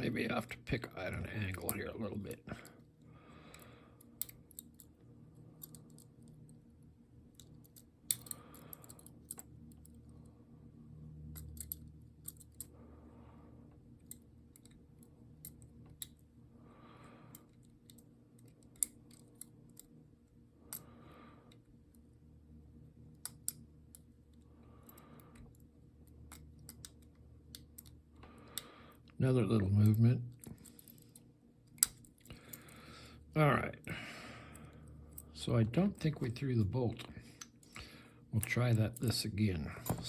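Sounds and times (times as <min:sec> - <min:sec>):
faint metallic lock picking clicks: 0:03.5 - 0:05.0, 0:05.6 - 0:06.6, 0:07.3 - 0:10.2, 0:11.3 - 0:12.7, 0:14.0 - 0:16.2, 0:17.3 - 0:20.0, 0:23.1 - 0:28.7, 0:29.8 - 0:32.8.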